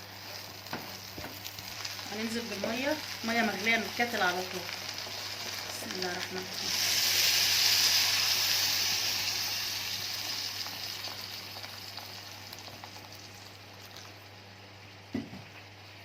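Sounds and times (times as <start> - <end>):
water sizzling in hot oil: 0.0 - 14.5
boiling water pouring: 5.3 - 14.5.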